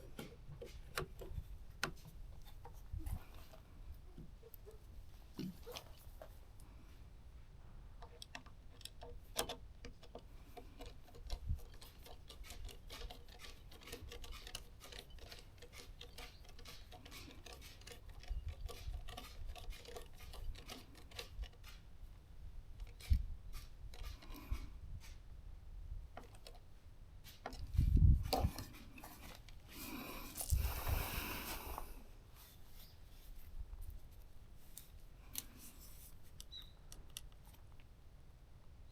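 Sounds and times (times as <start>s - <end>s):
small sharp clicks and scrapes: 8.0s - 21.9s, 22.8s - 25.2s, 26.2s - 30.7s, 34.7s - 37.9s.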